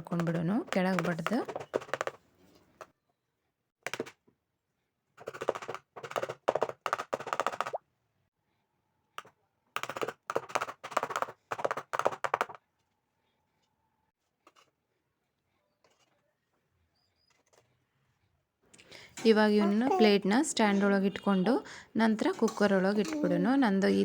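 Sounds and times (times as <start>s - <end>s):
plates rapping on hard surface: 19.1s - 24.0s.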